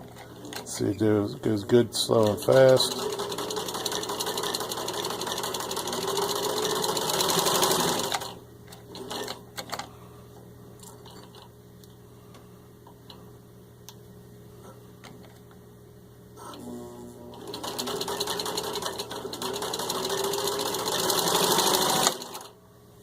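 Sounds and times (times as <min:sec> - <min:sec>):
faint steady hum: 0:00.0 - 0:23.0
sewing machine stitching: 0:02.2 - 0:09.8, 0:16.5 - 0:22.5.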